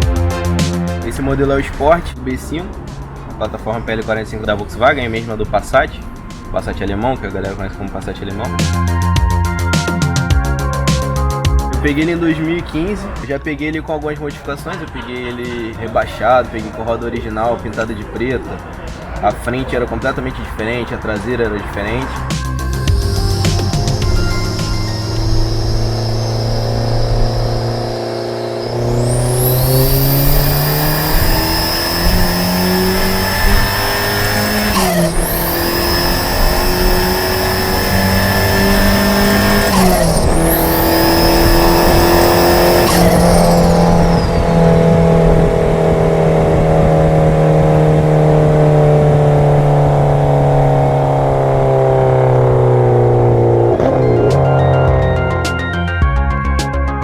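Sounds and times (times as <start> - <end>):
turbo whine: 0.0 - 2.0, 21.8 - 56.3
gear change burst: 0.0 - 3.5, 7.4 - 13.4, 15.6 - 56.0
car engine accelerating: 0.0 - 57.0.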